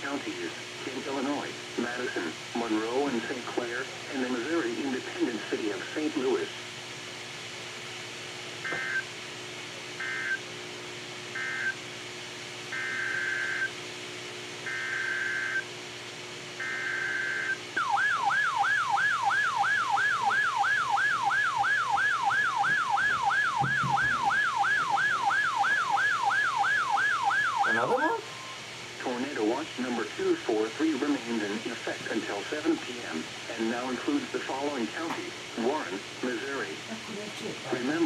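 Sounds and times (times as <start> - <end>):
electronic siren-like alarm tone: 8.7 - 9.1, 10.0 - 10.4, 11.4 - 11.8, 12.7 - 13.7, 14.7 - 15.6, 16.6 - 28.6.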